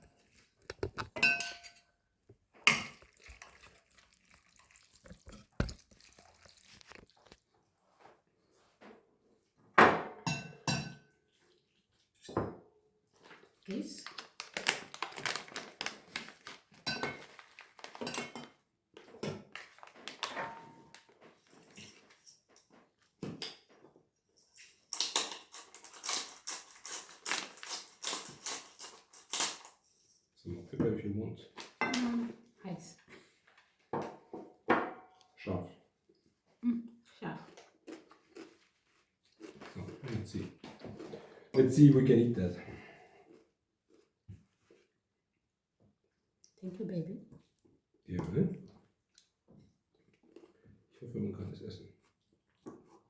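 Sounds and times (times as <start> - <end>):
dishes and cutlery clinking: 0.2 - 2.0, 2.6 - 3.7, 9.8 - 11.2, 16.8 - 30.2, 31.6 - 32.3, 40.8 - 41.9
pepper mill grinding: 3.0 - 7.4, 24.9 - 29.8.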